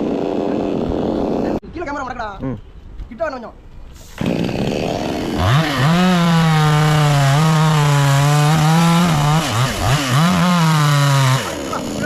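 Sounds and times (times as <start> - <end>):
chainsaw running at high speed: 0.0 - 1.6, 4.2 - 12.0.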